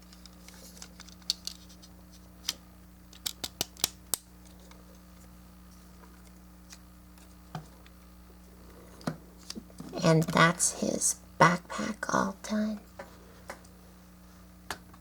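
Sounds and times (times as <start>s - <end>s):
faint steady hum: 0.0s - 15.0s
plastic parts clicking together: 3.1s - 4.2s.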